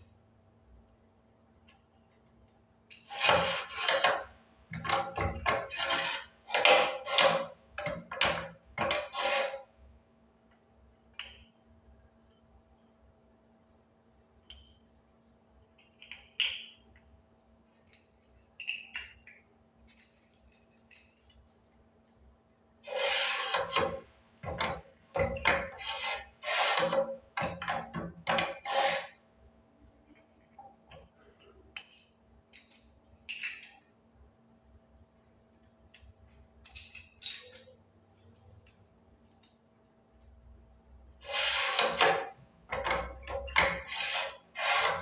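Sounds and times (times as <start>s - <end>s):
press clattering strokes: 3.1s - 9.6s, 22.9s - 29.2s, 41.2s - 45.0s.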